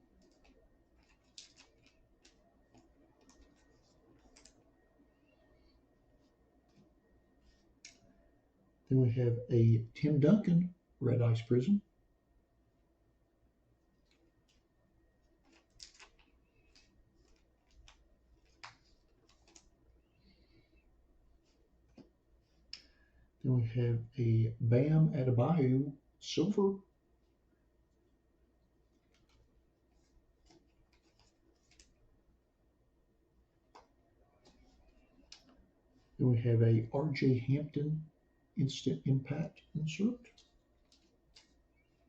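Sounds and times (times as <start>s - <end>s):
trading cards clicking and sliding: 0.0s - 4.7s, 15.3s - 20.8s, 28.9s - 32.1s, 33.7s - 36.2s, 40.0s - 42.0s.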